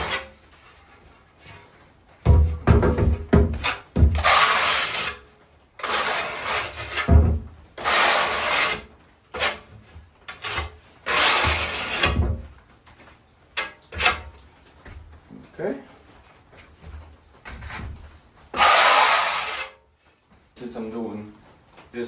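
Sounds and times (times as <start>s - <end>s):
trowel scraping mortar on tile: 0.0s - 1.8s, 3.0s - 12.4s, 13.6s - 14.4s, 18.5s - 19.8s.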